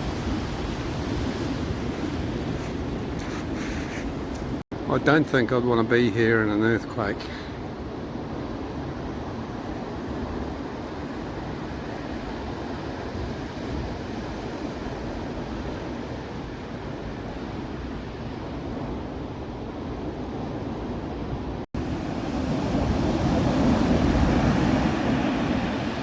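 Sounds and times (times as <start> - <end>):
wind on microphone: 0.0 - 4.6
surf breaking on beach: 21.8 - 26.0.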